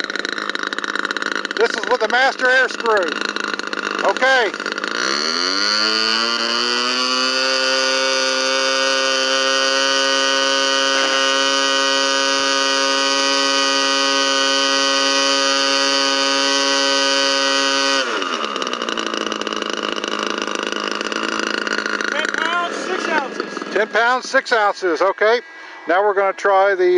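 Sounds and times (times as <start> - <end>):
model aircraft engine droning: 0.0 - 26.9.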